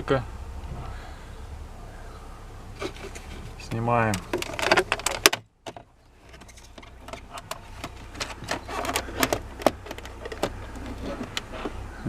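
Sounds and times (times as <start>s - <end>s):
plastic panel clicking and knocking: 4.1s - 11.5s.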